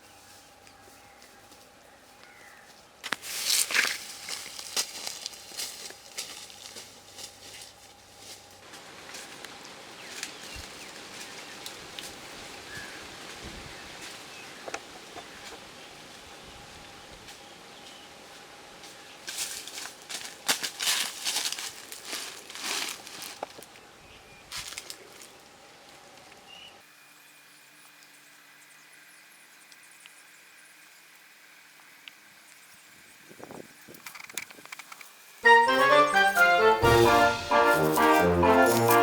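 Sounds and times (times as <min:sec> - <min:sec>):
rustling and crackling: 0:03.0 - 0:12.6, 0:19.2 - 0:23.7.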